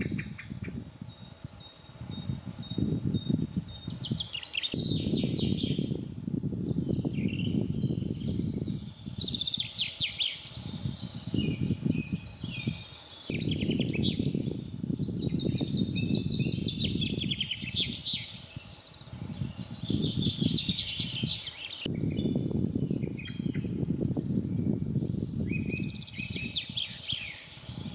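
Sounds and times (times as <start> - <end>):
songbirds singing: 0.0 - 27.9.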